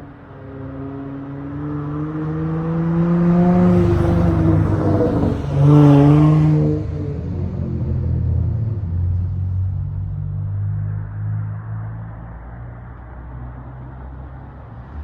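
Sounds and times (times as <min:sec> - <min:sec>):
car engine revving: 0:03.3 - 0:08.0.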